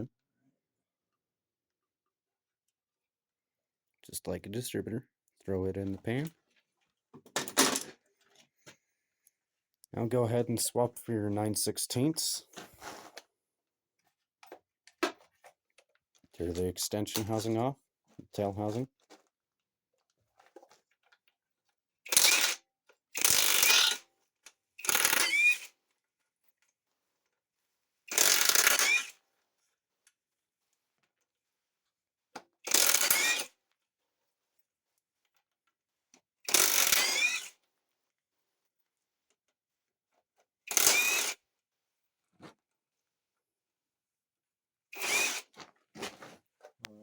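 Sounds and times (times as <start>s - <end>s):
ratchet wrench ratcheting: 22.1s - 22.6s, 23.2s - 24.0s, 24.8s - 25.7s, 28.1s - 29.1s, 32.7s - 33.5s, 36.5s - 37.5s, 40.7s - 41.4s.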